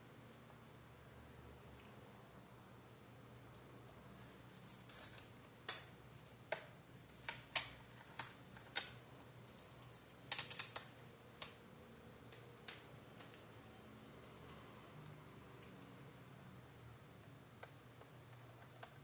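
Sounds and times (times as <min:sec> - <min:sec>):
sharp irregular clicks and taps: 0:05.6 - 0:09.0.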